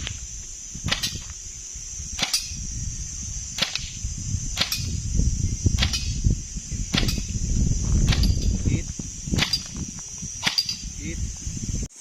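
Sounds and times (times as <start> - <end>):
airsoft gun shots: 0.9 - 1.2, 2.2 - 2.6, 3.6 - 4.0, 4.6 - 5.0, 5.8 - 6.2, 6.9 - 7.3, 8.0 - 8.5, 9.4 - 9.8, 10.4 - 10.8.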